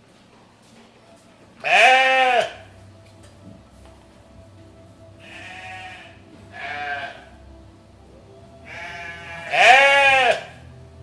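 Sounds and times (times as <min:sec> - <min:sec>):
goats bleating: 0:01.6 - 0:02.7, 0:05.2 - 0:07.3, 0:08.6 - 0:10.6.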